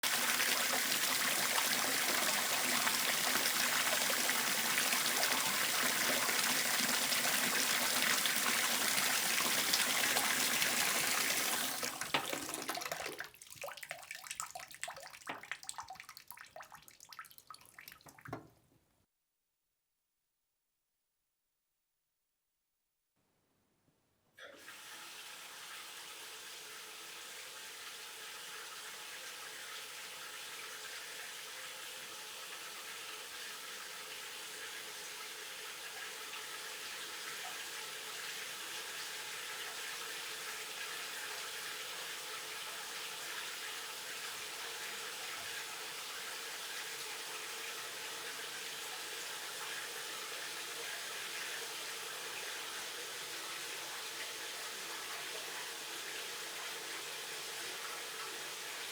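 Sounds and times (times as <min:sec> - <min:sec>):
water running from a tap: 0:00.0 - 0:18.4, 0:24.5 - 0:58.9.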